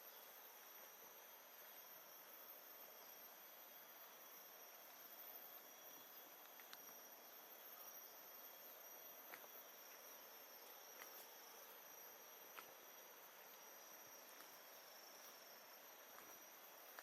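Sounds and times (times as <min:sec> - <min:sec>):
soft even hiss: 0:00.0 - 0:17.0
faint ticks: 0:05.9 - 0:07.1, 0:16.0 - 0:17.0.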